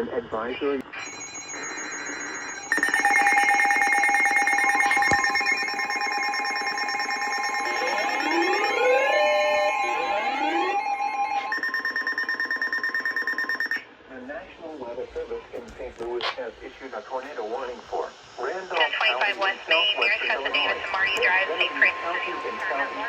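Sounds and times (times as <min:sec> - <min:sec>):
fast pulsing beep: 0:00.9 - 0:13.8
steady alarm tones with buzzing pulse: 0:00.9 - 0:13.8, 0:17.5 - 0:23.0
rising sweeping tones: 0:01.0 - 0:12.9.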